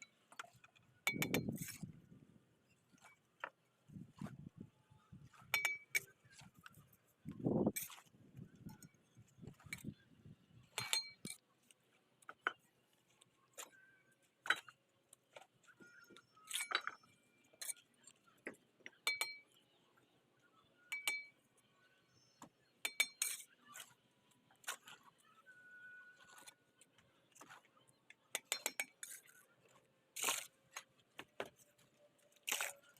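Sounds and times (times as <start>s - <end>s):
trowel tapping on bricks: 1.1s - 1.7s, 5.4s - 6.1s, 28.4s - 29.2s.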